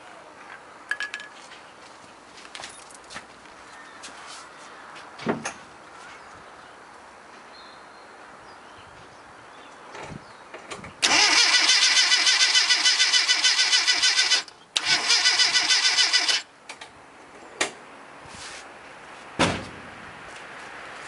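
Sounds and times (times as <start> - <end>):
starter motor cranking engine: 11.0 - 16.4.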